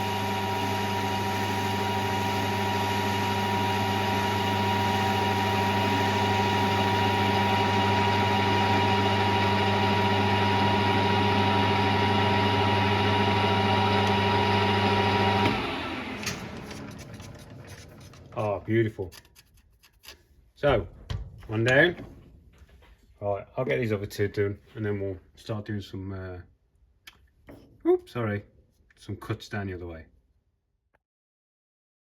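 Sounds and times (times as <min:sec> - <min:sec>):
metal lathe motor humming: 0:00.0 - 0:18.0.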